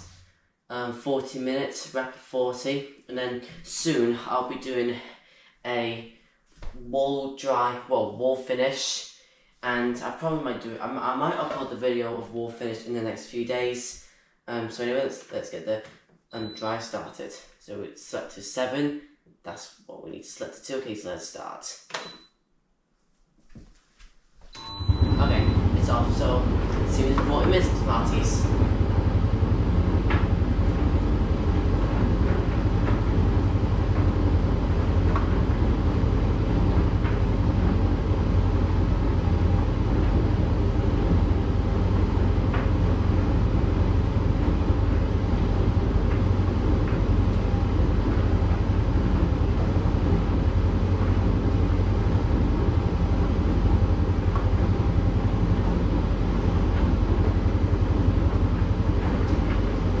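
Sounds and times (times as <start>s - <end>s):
tumble dryer running: 24.6s - 60.0s.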